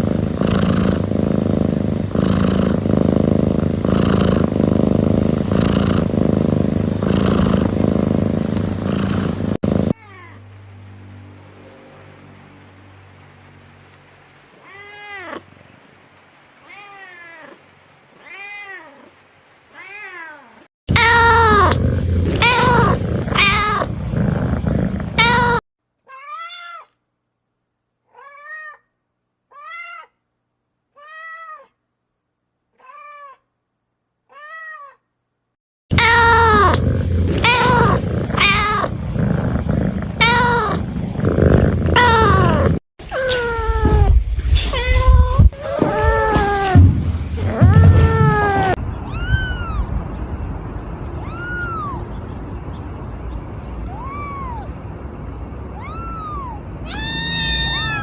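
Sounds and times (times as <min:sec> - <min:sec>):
background noise: 0:00.0 - 0:41.2, 0:41.8 - 0:58.0
kittens meowing: 0:20.9 - 0:23.9, 0:25.2 - 0:26.9, 0:35.9 - 0:50.0, 0:51.2 - 0:52.5, 0:53.8 - 0:54.7, 0:55.7 - 0:58.0.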